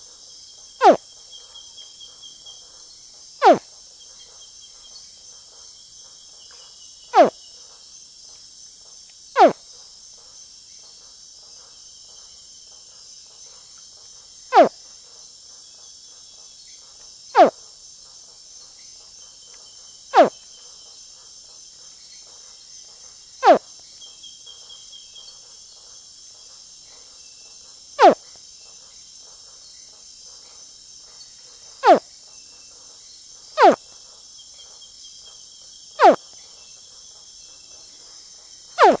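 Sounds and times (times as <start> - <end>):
high insect chorus: 0.0 - 39.0
crocodile hatchling chirping: 9.4 - 9.6, 38.8 - 39.0.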